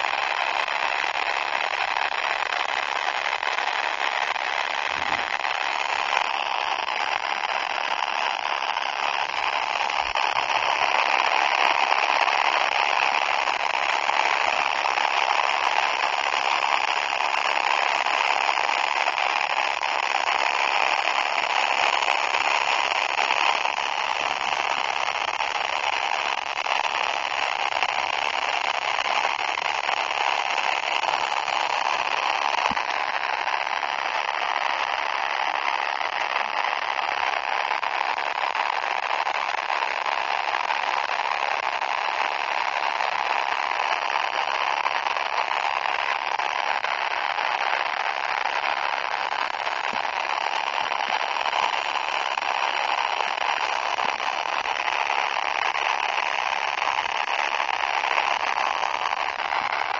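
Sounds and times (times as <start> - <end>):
distorted fart sound effect: 4.8 - 5.9.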